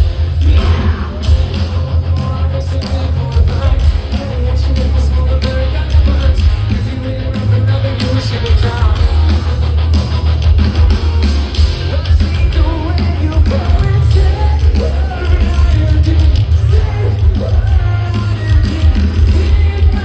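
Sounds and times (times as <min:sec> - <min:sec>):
booming bass: 0:00.0 - 0:20.0
live rock band playing: 0:00.0 - 0:20.0
person singing: 0:00.4 - 0:09.3.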